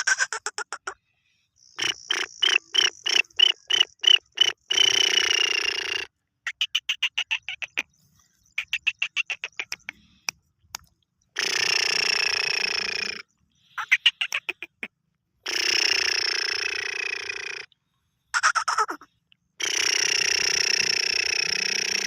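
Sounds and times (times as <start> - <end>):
bird quick sharp repeated notes: 8.6 - 10.2, 13.7 - 14.9.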